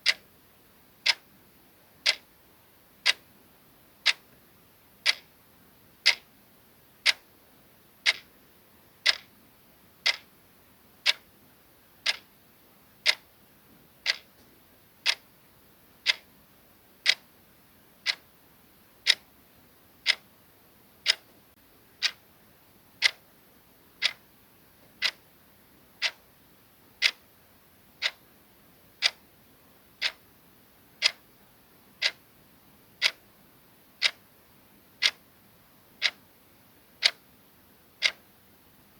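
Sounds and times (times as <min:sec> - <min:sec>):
clock ticking: 0:00.0 - 0:00.2, 0:01.0 - 0:01.2, 0:02.0 - 0:02.3, 0:03.0 - 0:03.2, 0:04.0 - 0:04.2, 0:05.0 - 0:05.3, 0:06.0 - 0:06.3, 0:07.0 - 0:07.3, 0:08.0 - 0:08.3, 0:09.0 - 0:09.3, 0:10.0 - 0:10.3, 0:11.0 - 0:11.3, 0:12.0 - 0:12.3, 0:13.0 - 0:13.3, 0:14.0 - 0:14.4, 0:15.0 - 0:15.3, 0:16.0 - 0:16.3, 0:17.0 - 0:17.2, 0:18.0 - 0:18.3, 0:19.0 - 0:19.3, 0:20.0 - 0:20.2, 0:21.0 - 0:21.3, 0:22.0 - 0:22.2, 0:23.0 - 0:23.2, 0:24.0 - 0:24.2, 0:24.9 - 0:25.2, 0:26.0 - 0:26.3, 0:27.0 - 0:27.2, 0:28.0 - 0:28.2, 0:29.0 - 0:29.2, 0:30.0 - 0:30.2, 0:31.0 - 0:31.2, 0:32.0 - 0:32.2, 0:33.0 - 0:33.2, 0:34.0 - 0:34.2, 0:35.0 - 0:35.2, 0:36.0 - 0:36.2, 0:37.0 - 0:37.2, 0:38.0 - 0:38.2.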